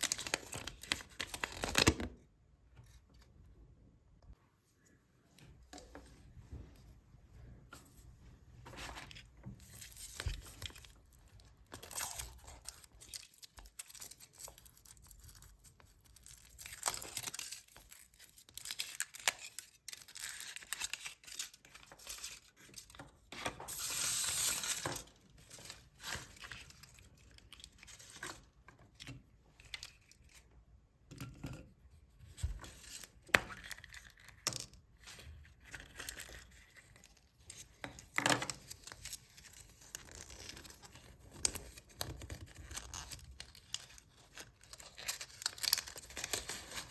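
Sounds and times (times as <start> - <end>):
foil wrappers tearing and crinkling: 42.3 - 46.9.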